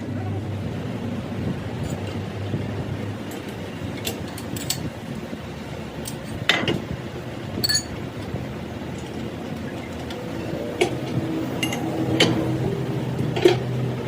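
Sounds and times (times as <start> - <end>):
metal tools clinking and clanking: 3.3 - 4.9, 7.6 - 8.0, 11.6 - 12.3.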